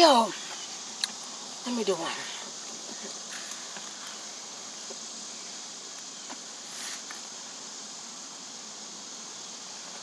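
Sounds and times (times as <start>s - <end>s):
low background hiss: 0.0s - 10.0s
soft rustle: 6.6s - 7.3s.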